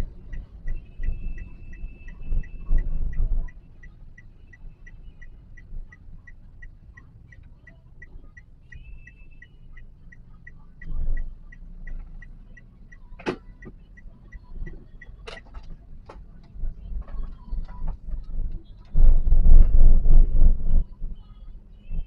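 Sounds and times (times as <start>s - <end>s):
road and engine rumble: 0.0s - 22.0s
turn signal ticking: 0.0s - 22.0s
low rumbling thumps: 16.6s - 21.2s.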